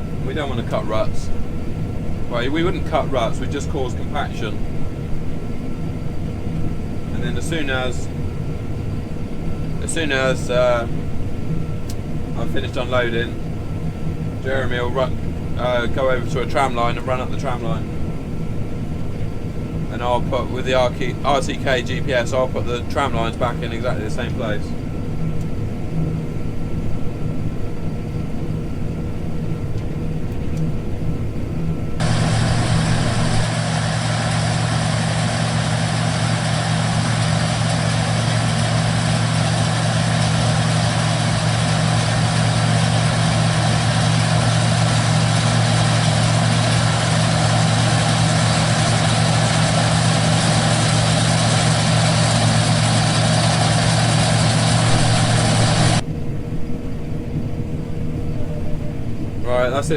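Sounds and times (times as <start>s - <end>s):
loud engine with low hum: 0.0s - 59.9s
combine harvester engine running: 32.0s - 56.0s.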